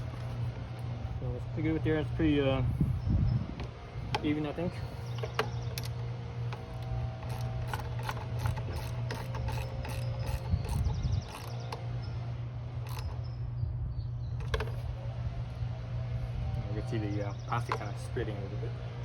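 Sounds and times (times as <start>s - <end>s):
landscaping equipment drone: 0.0s - 19.0s
ratchet wrench clicking: 5.0s - 11.8s, 12.8s - 13.2s.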